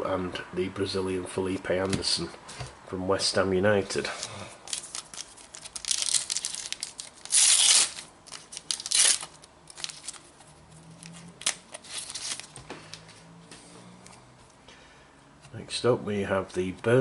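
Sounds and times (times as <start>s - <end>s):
cards rustling and clicking: 4.0s - 13.1s
foil packet tearing: 4.1s - 10.3s.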